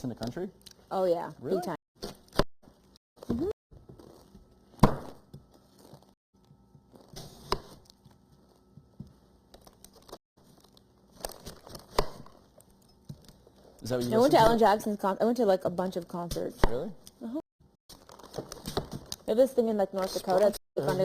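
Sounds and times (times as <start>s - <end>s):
sharp knocks in kitchen: 4.8s - 5.4s.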